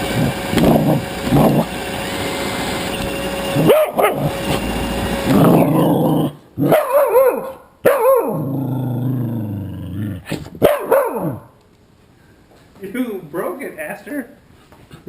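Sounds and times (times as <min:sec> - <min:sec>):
dog growling: 0:00.0 - 0:01.8, 0:03.5 - 0:06.8, 0:08.1 - 0:11.6
robot vacuum motor whine: 0:00.0 - 0:06.0
dog barking: 0:03.6 - 0:04.4, 0:06.6 - 0:08.5, 0:10.6 - 0:11.6.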